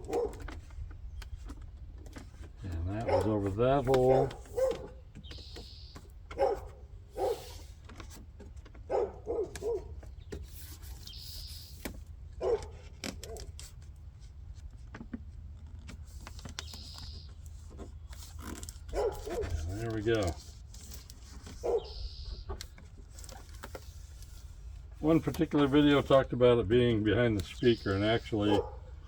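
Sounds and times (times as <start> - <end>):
hands working at door panel: 0.0 - 13.9.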